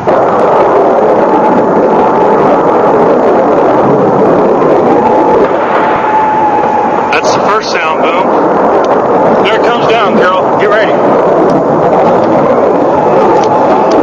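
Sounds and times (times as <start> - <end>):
faint air-raid siren: 0.0 - 14.0
missile launch roar: 0.0 - 14.0.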